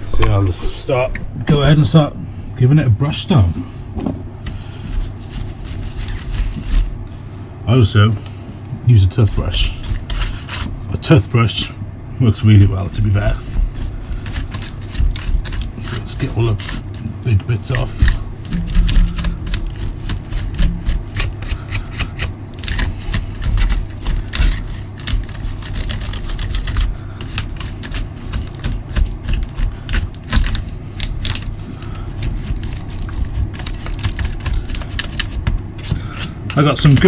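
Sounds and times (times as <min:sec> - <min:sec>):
stiff brush scrubbing mud: 0:04.8 - 0:07.0, 0:09.0 - 0:11.7, 0:12.4 - 0:35.9
steady low rumble: 0:17.9 - 0:21.5.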